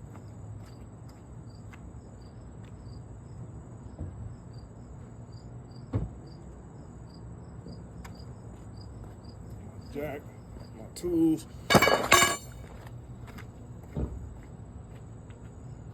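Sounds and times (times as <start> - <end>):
crickets chirping: 0.0 - 12.4, 14.5 - 15.9.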